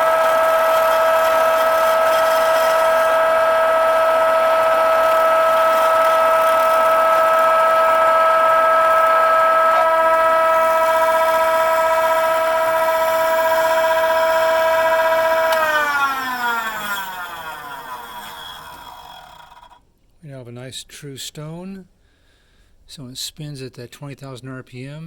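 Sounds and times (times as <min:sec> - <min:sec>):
grinding spindle high whine: 0:00.0 - 0:19.8
spindle winding down: 0:00.0 - 0:19.8.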